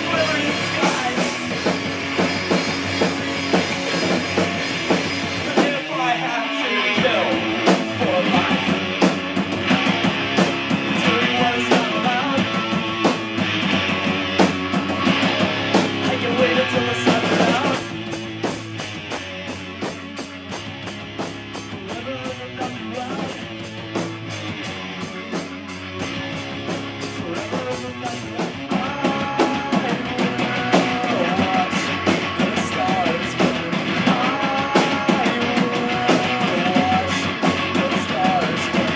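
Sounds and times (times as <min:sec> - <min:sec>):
rock music: 0:00.0 - 0:38.9.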